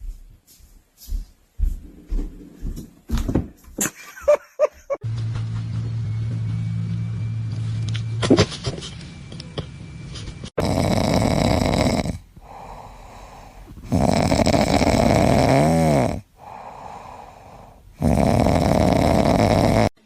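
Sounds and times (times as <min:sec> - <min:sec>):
pet snoring: 0:10.6 - 0:20.0.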